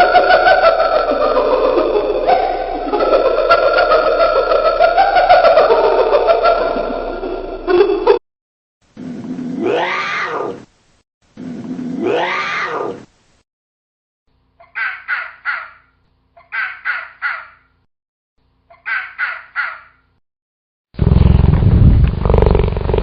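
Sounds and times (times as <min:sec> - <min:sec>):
long rising and falling animal calls: 0:00.0 - 0:07.9
harsh caw-like calls: 0:14.8 - 0:15.9.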